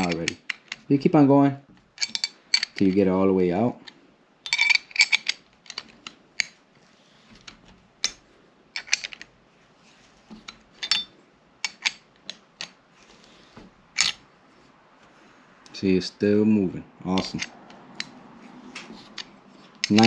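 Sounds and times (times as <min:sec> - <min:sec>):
metallic tool clicks: 0:10.8 - 0:12.8, 0:17.2 - 0:18.2, 0:19.1 - 0:20.0.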